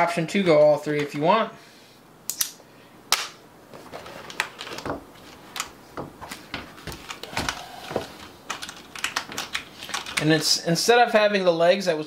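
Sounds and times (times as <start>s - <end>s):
plastic pieces clicking together: 6.9s - 10.3s.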